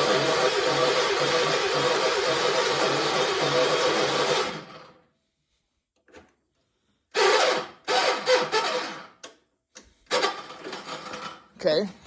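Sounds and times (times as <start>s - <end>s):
starter cranking engine: 7.2s - 9.2s, 10.1s - 11.5s.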